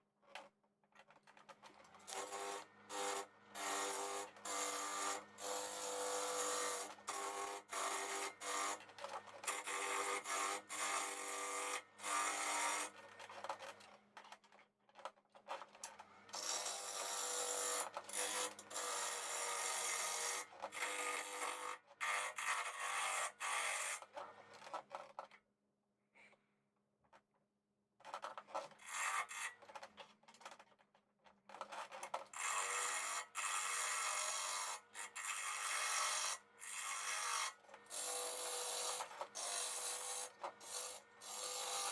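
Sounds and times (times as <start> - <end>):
turning tool cutting wood on lathe: 32.5 - 41.9.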